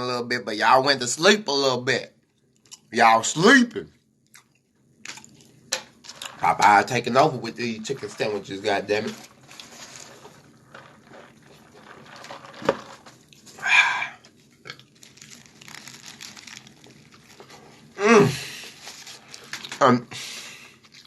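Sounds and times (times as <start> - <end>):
man chewing food: 4.2 - 6.4, 9.2 - 21.0
breathy hiss: 13.5 - 14.3, 20.1 - 20.8.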